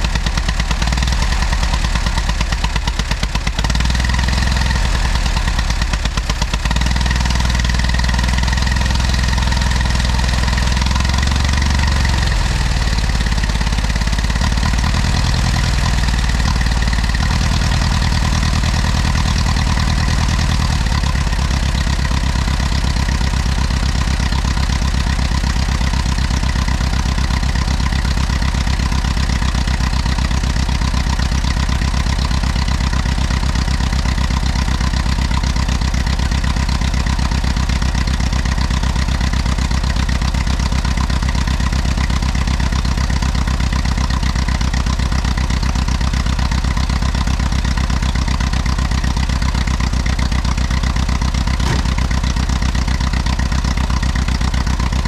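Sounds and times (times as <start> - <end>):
tractor engine idling: 0.0 - 55.0.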